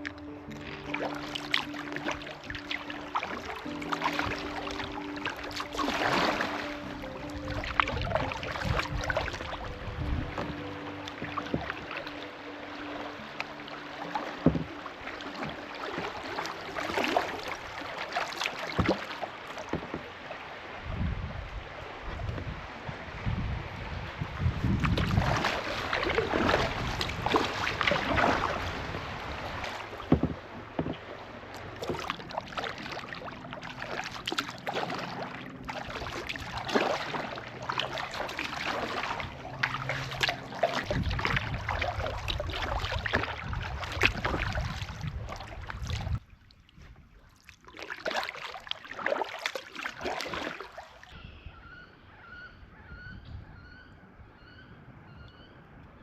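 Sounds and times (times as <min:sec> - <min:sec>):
paddle splashing in water: 0:00.0 - 0:51.2
wind rumbling on microphone: 0:02.2 - 0:12.2, 0:19.8 - 0:34.7, 0:35.3 - 0:47.2, 0:51.1 - 0:56.0.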